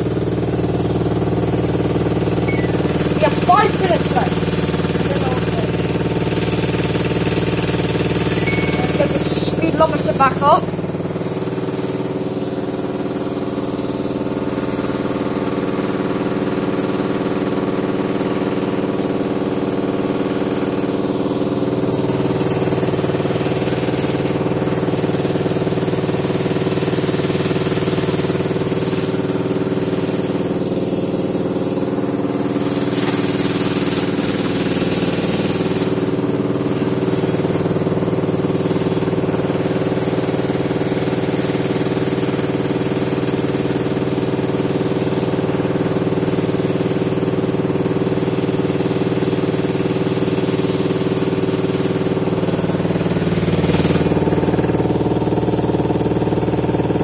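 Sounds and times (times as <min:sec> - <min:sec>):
washing machine spinning whine: 0:00.0 - 0:57.0.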